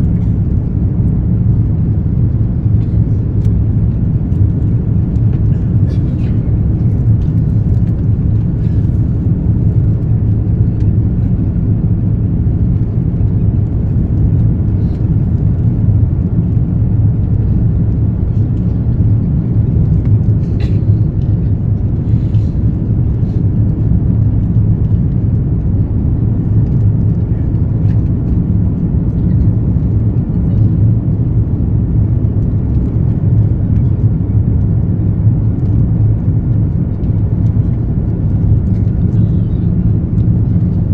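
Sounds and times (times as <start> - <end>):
airliner cabin drone: 0.0 - 40.9.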